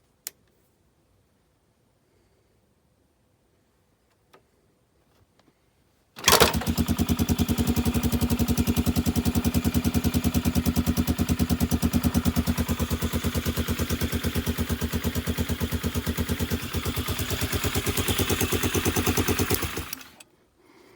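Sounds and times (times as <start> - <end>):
atv engine running: 6.2 - 20.2.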